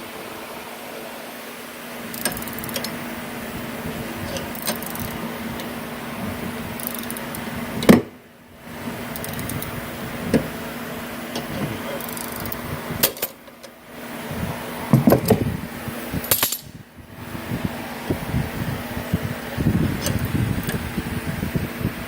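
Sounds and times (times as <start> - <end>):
steady shop hum: 0.0 - 22.0
wrench clicking and clinking: 2.1 - 3.0, 4.3 - 5.7, 6.8 - 7.5, 9.2 - 9.7, 11.4 - 13.7, 16.2 - 16.7.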